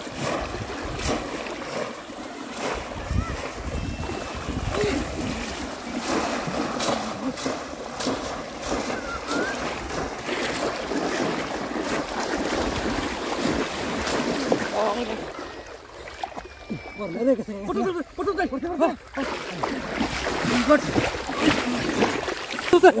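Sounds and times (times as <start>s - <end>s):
wind buffeting microphone: 0.0s - 1.5s, 2.6s - 15.4s
river water splashing: 0.0s - 23.0s.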